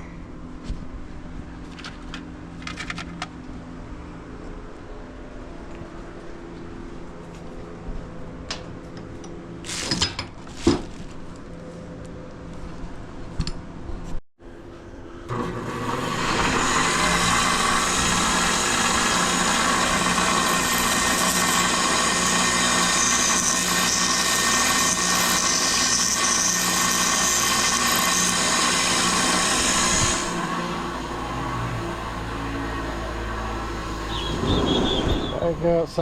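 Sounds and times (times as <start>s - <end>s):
electric power tool running: 15.2s - 35.8s.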